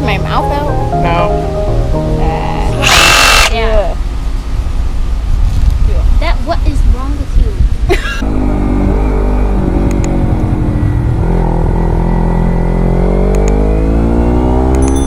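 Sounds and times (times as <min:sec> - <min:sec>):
motor running: 0:02.6 - 0:03.8.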